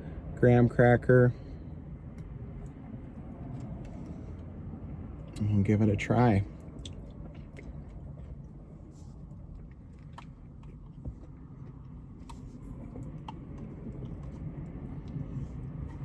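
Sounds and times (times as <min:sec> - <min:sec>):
steady low hum: 0:00.0 - 0:16.0
soft chewing: 0:06.5 - 0:16.0.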